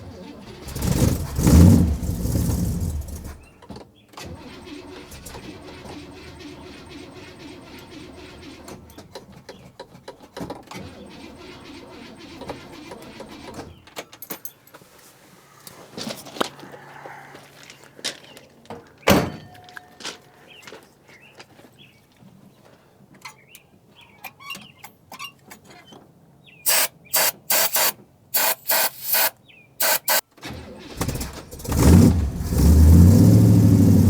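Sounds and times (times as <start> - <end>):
car engine cranking: 0.2 - 3.6, 4.2 - 9.0, 26.7 - 34.0
scattered clicks: 26.7 - 30.2.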